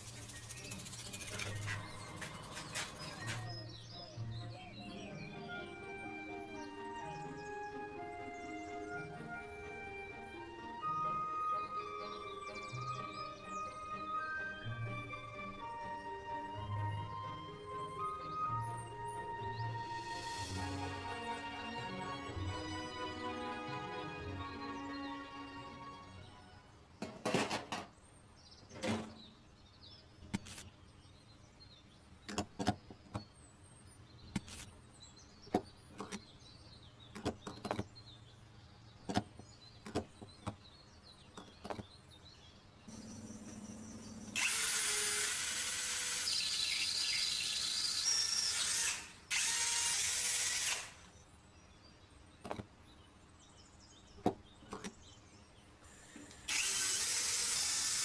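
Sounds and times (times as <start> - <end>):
small motor whirring: 0.0 - 3.4, 42.9 - 51.1, 55.8 - 58.0.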